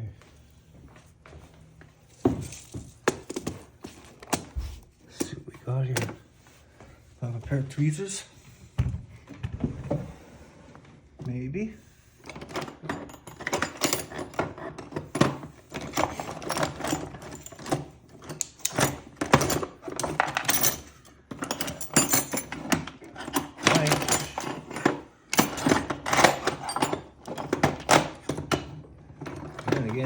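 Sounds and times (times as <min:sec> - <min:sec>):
small metal parts clinking: 0:12.3 - 0:28.7.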